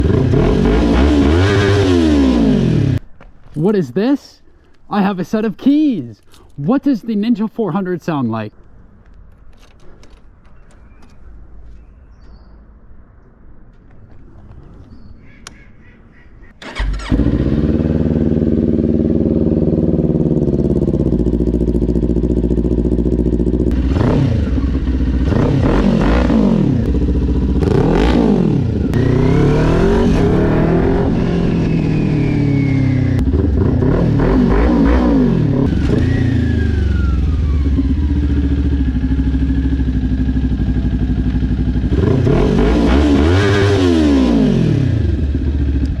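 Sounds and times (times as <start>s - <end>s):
motorcycle engine idling and revving: 0.0s - 3.2s, 16.6s - 46.0s.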